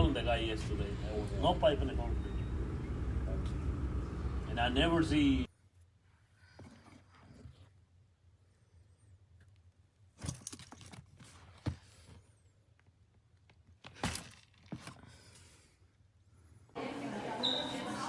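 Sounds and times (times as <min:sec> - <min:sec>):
low background hum: 0:00.0 - 0:05.9.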